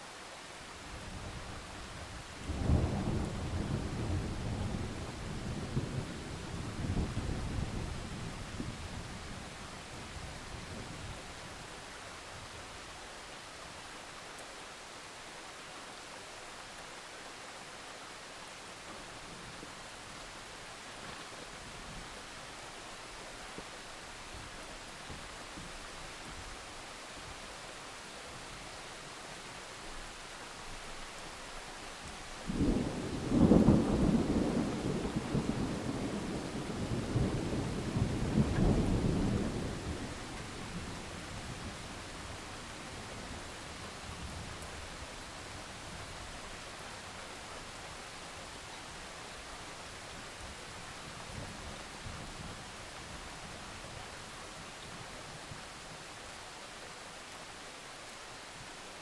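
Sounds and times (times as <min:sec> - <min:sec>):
steady rain falling: 0:00.0 - 0:59.0
thunder rumbling: 0:32.5 - 0:44.6.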